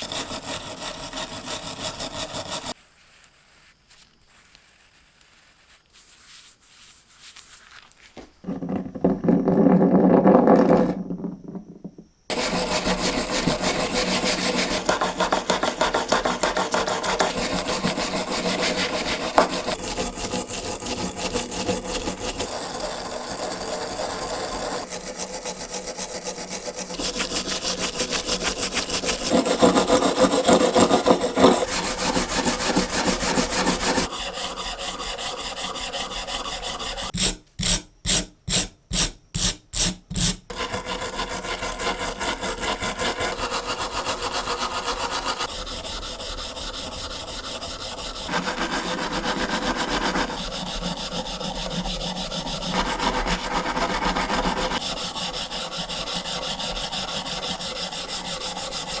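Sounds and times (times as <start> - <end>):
abrasive rasping on metal: 12.3 - 59.0.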